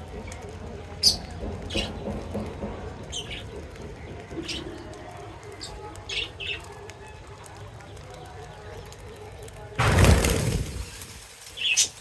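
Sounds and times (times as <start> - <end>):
low background murmur: 0.0 - 12.0
pet birds chirping: 0.9 - 9.3.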